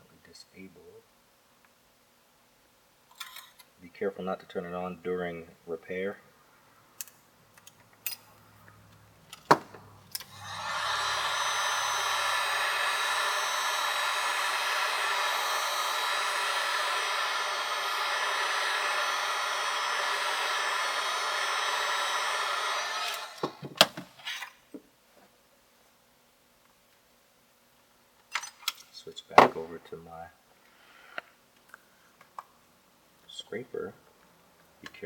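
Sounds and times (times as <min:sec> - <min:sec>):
hot-air blower rushing: 0:09.5 - 0:24.1.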